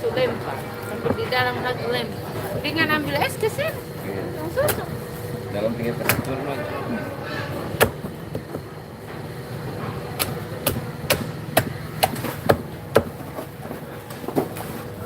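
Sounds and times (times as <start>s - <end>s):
steady low hum: 0.0s - 15.0s
sharp chopping knocks: 10.2s - 13.3s.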